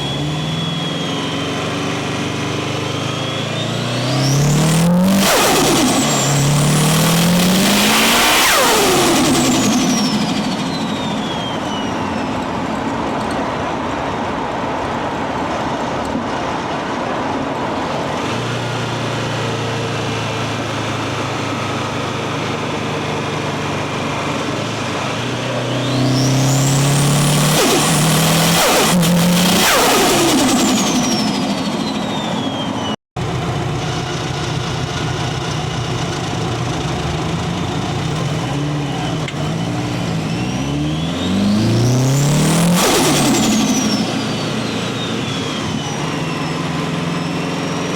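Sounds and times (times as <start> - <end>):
turbo whistle: 0.0 - 1.8, 2.8 - 12.6, 25.7 - 33.0, 38.8 - 47.9
car engine accelerating hard: 0.0 - 47.9.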